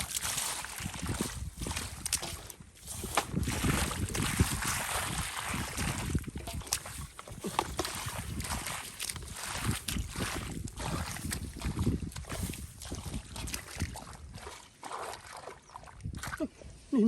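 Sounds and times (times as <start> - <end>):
shallow water sloshing and splashing: 0.0 - 16.6.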